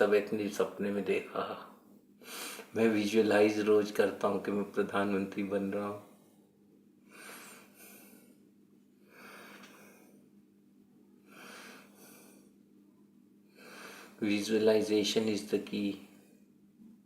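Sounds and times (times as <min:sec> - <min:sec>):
low steady hum: 0:00.0 - 0:17.0
man breathing: 0:02.2 - 0:02.7, 0:07.0 - 0:10.3, 0:11.2 - 0:12.6, 0:13.5 - 0:14.2.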